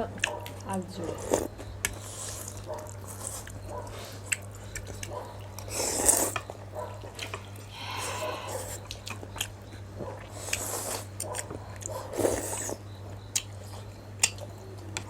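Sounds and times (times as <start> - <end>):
slurping soup: 1.0 - 4.7, 5.5 - 6.4, 7.2 - 9.5, 10.2 - 12.8.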